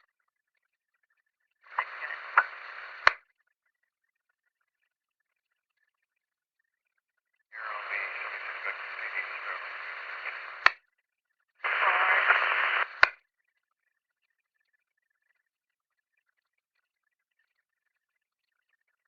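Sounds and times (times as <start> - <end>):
radio static hiss: 1.6 - 3.2, 7.6 - 10.8, 11.6 - 13.2
radio squelch tail click: 1.7 - 3.2, 7.6 - 10.8, 11.6 - 13.2.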